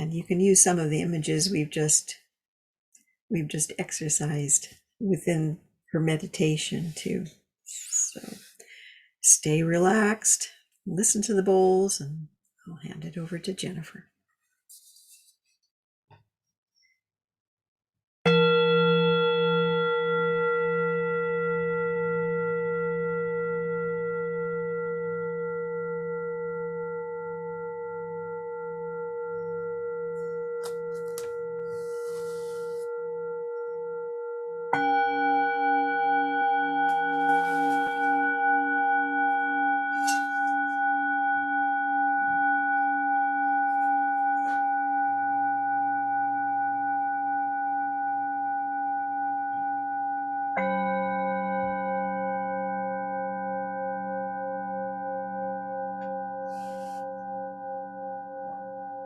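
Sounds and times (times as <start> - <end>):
higher singing bowl struck: 18.3 - 59.0
singing bowl ringing: 18.3 - 59.0.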